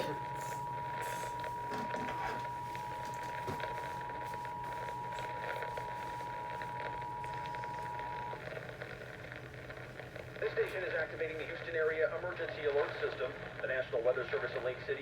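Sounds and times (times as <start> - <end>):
two-tone alarm: 0.0 - 8.4
broadcast hiss: 0.0 - 15.0.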